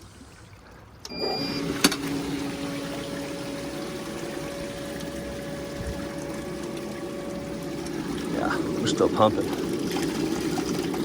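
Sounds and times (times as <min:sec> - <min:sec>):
pump humming: 0:00.0 - 0:11.0
rushing water: 0:00.0 - 0:11.0
pump switch click: 0:01.0 - 0:02.3.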